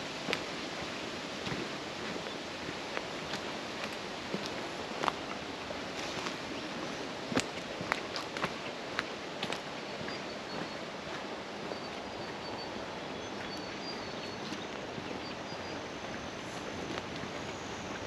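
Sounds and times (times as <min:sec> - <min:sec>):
footsteps on dirt track: 0:01.4 - 0:15.0.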